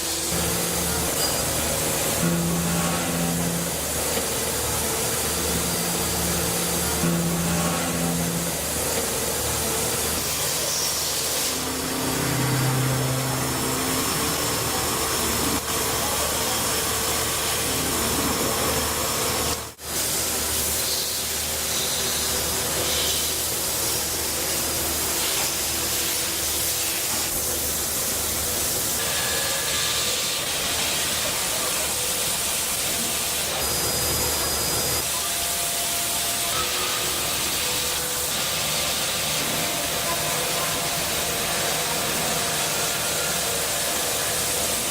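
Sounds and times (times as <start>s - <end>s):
steady machine hiss: 0.0s - 44.9s.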